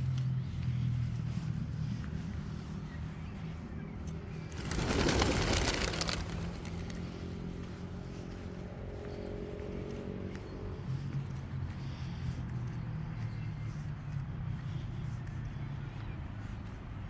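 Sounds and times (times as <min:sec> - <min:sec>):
low engine hum: 0:00.0 - 0:17.0
vehicle passing close by: 0:04.3 - 0:13.2.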